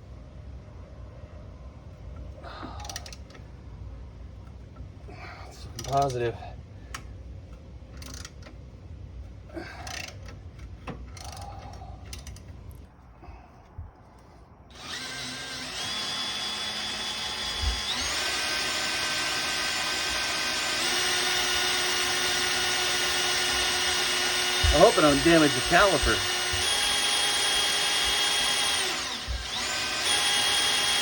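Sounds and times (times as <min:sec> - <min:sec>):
electric drill running: 0:14.7 - 0:31.0.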